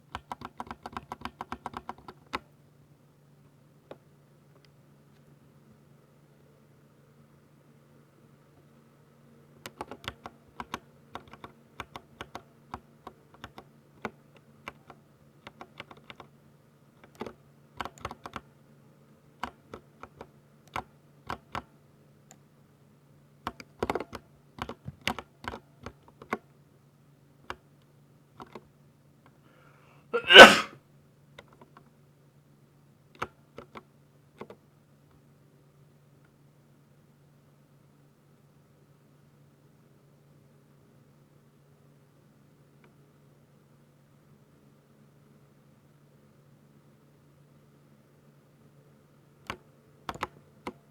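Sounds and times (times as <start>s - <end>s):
mechanical keyboard key clicks: 17.0s - 18.5s, 23.5s - 26.4s, 49.5s - 50.8s.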